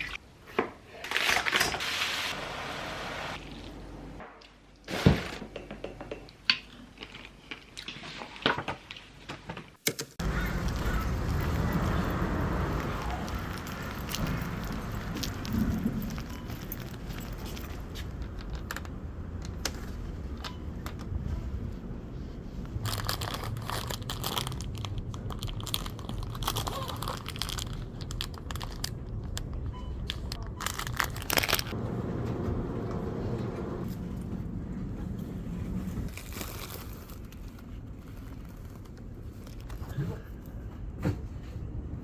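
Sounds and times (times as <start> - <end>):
crinkling and rustling: 6.9 - 41.9.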